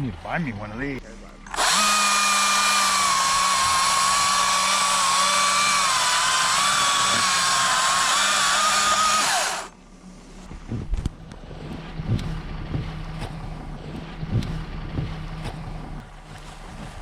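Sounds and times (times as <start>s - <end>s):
electric chainsaw cutting wood: 1.5s - 9.7s.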